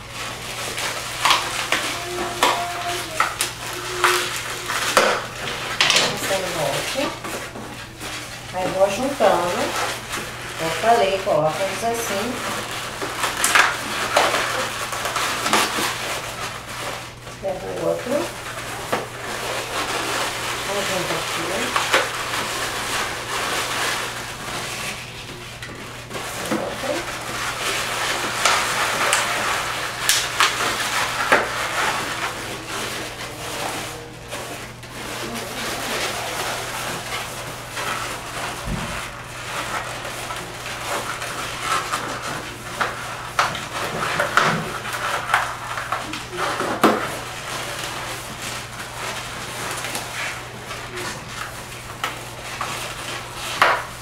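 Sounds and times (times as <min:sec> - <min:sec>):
rubber balloons squeaking: 0:01.4 - 0:11.4.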